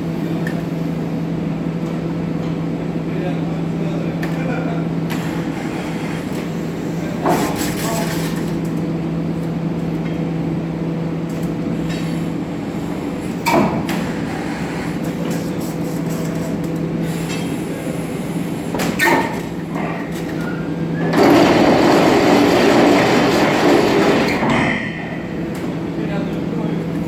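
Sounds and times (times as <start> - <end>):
machinery humming: 0.0 - 27.0
sharp metallic clanks: 24.2 - 25.6.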